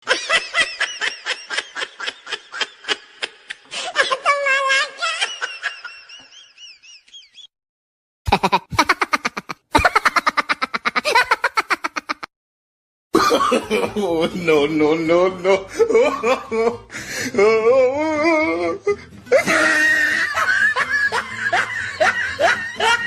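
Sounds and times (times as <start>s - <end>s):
hearty laughter: 0.0s - 4.1s, 5.0s - 7.5s, 8.3s - 12.3s, 15.4s - 17.1s, 18.9s - 23.0s
high-pitched giggling laugh: 8.3s - 12.3s, 19.3s - 23.0s.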